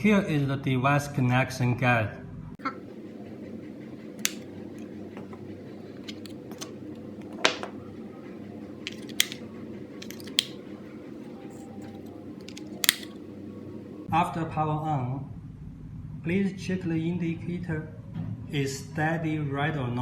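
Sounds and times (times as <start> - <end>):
sharp clicks: 2.6 - 13.7
steady low hum: 2.6 - 14.1.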